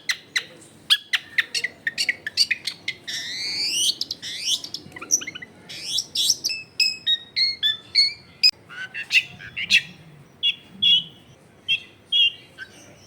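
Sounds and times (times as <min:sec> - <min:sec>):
bird chirping and whistling: 0:00.9 - 0:13.0.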